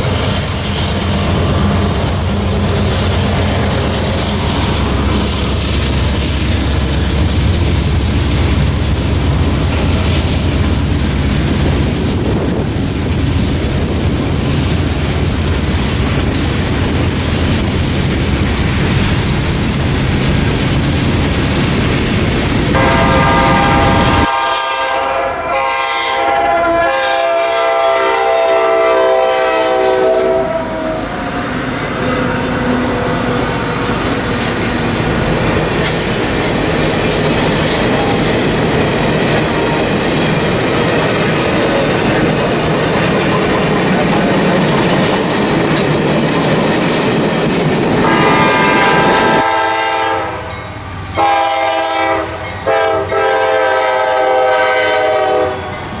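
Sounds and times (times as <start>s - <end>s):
train wheel and rail noise: 0.0s - 56.0s
locomotive air horn blasts: 22.7s - 33.6s, 48.0s - 50.6s, 51.2s - 55.8s.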